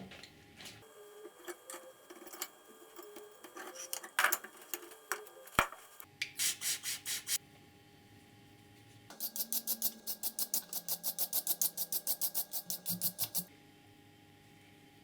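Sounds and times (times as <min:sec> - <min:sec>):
metal parts clicking and scraping: 0:01.4 - 0:05.0
filing strokes on metal: 0:09.1 - 0:13.5.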